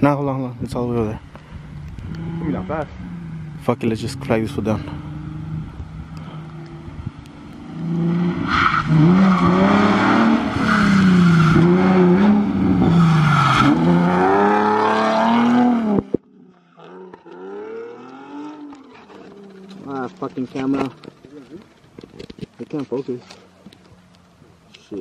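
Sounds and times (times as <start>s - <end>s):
tire noise on road: 0.0s - 25.0s
car engine revving: 1.6s - 16.2s, 16.8s - 21.5s.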